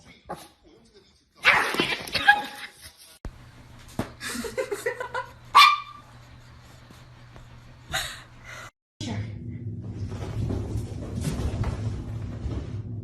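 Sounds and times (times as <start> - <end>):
dog barking: 5.5 - 6.1.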